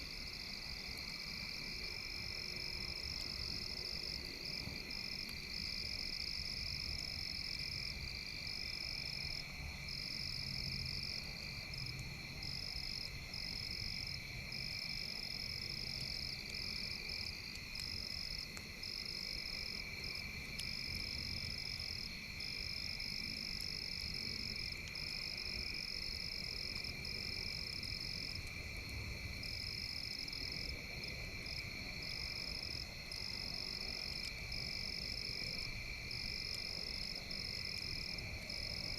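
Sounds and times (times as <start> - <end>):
frogs and insects trilling: 0.0 - 38.9.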